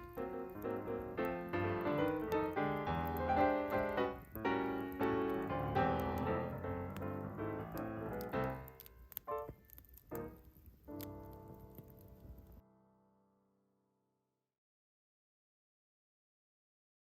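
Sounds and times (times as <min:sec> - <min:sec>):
piano playing: 0:00.0 - 0:13.4.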